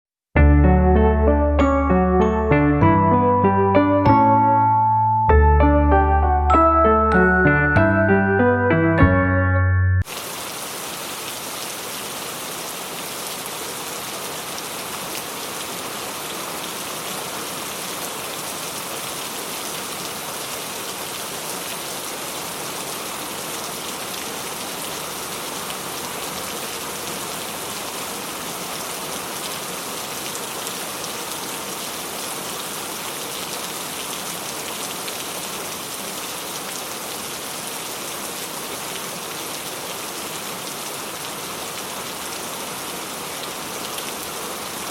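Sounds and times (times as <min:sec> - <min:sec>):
steady rain falling: 0:10.0 - 0:44.9.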